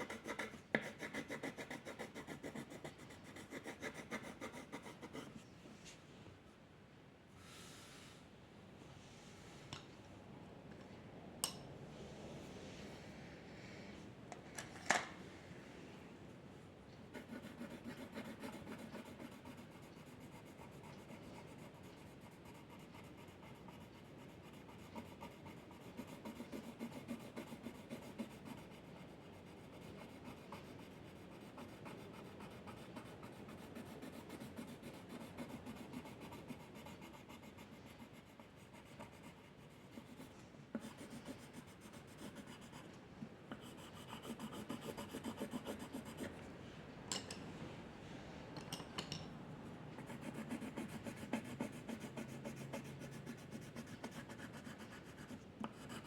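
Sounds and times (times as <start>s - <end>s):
drawing tool scratching on paper: 0.0s - 5.4s, 17.2s - 42.9s, 43.6s - 46.4s, 50.0s - 56.0s.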